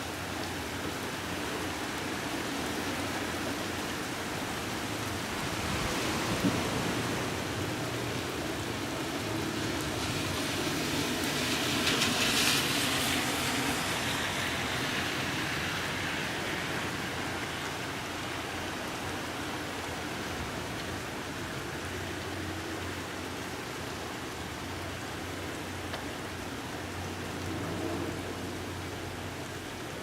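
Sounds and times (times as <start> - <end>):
steady rain falling: 0.0 - 30.0.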